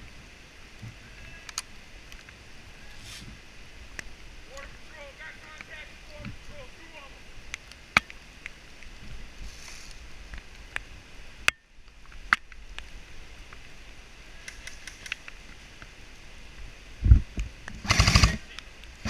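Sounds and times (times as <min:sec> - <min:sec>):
wind rumble: 0:00.0 - 0:19.0
sharp clicks: 0:14.4 - 0:15.4.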